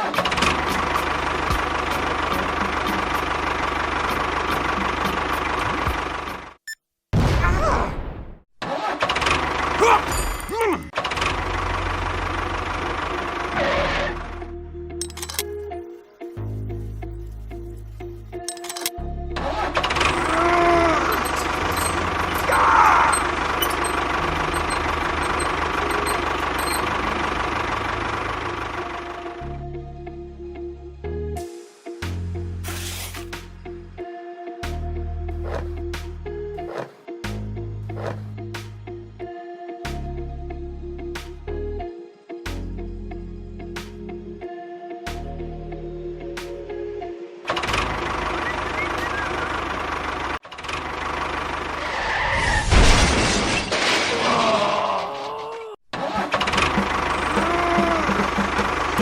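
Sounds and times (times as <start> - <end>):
engine idling with ticking knock: 0.2 - 6.6, 11.0 - 13.6, 19.8 - 29.4, 47.5 - 51.8, 56.0 - 59.0.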